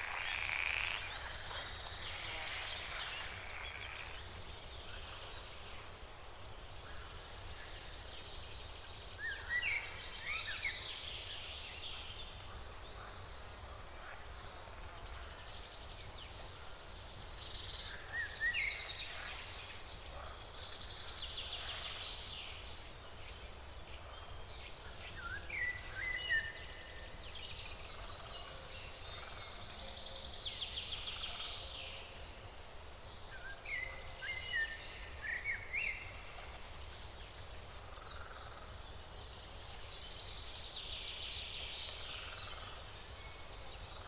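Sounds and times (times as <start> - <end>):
frogs croaking in pulsed trains: 0.0 - 1.6.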